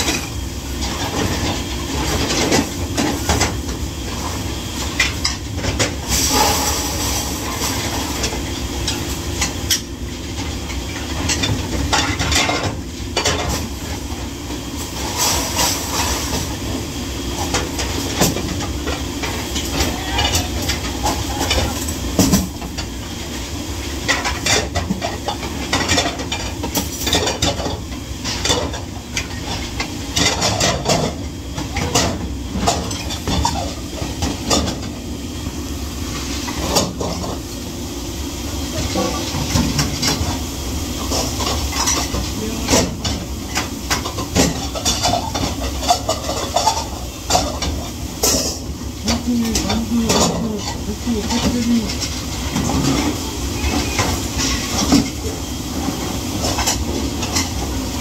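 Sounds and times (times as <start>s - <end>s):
dishes and cutlery clattering: 41.1s - 52.0s.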